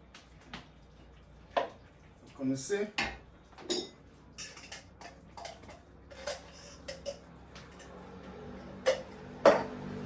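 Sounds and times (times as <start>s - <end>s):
utensil clinking against pot: 3.0s - 8.0s, 8.7s - 9.8s.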